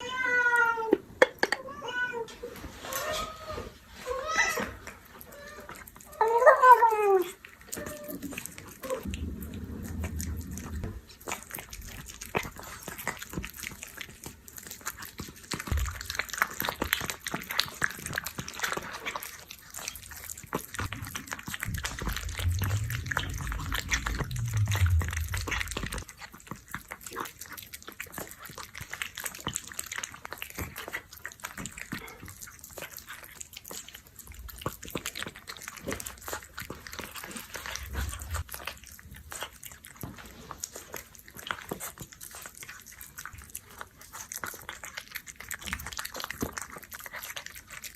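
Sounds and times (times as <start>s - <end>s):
cat chewing wet food: 4.7s - 47.9s
low bumps: 9.0s - 12.2s, 20.9s - 26.1s, 37.7s - 38.5s.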